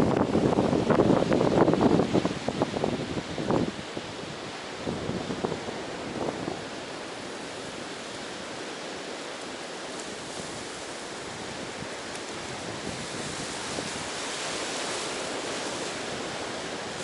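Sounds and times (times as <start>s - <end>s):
ocean surf washing onto beach: 0.0s - 17.0s
water splashes: 3.8s - 17.0s.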